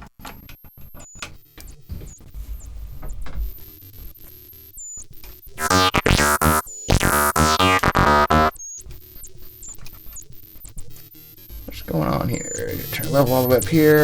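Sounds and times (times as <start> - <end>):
quiet synthesizer sound: 5.6 - 8.5
filtered synth notes: 5.6 - 8.6.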